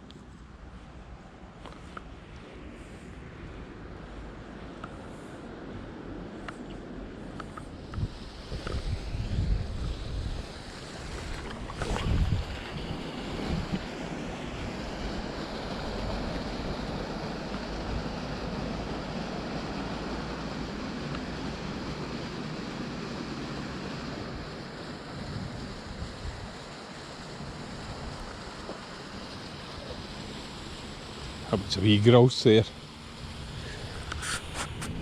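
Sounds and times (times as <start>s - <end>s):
wind buffeting microphone: 2.3s - 19.4s
river water rushing: 10.2s - 25.2s.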